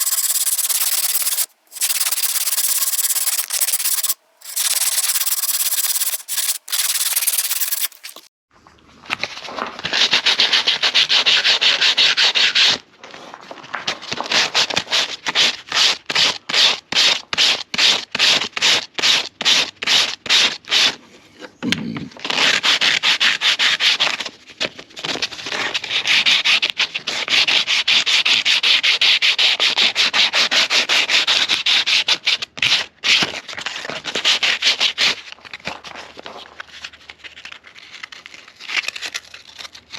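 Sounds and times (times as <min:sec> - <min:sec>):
sanding wood by hand: 0:00.0 - 0:08.3.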